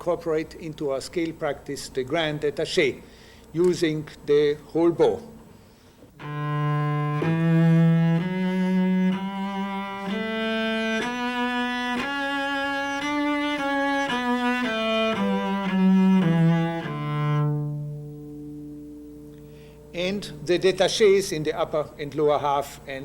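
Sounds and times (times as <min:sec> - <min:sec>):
cello playing a scale: 0:06.2 - 0:18.8.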